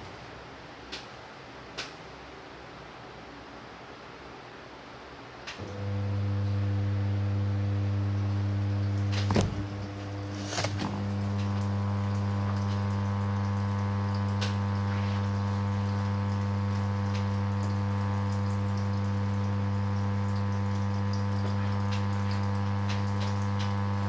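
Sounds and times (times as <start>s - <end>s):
washing machine hum: 4.8s - 24.0s
water sloshing and trickling: 8.8s - 13.5s.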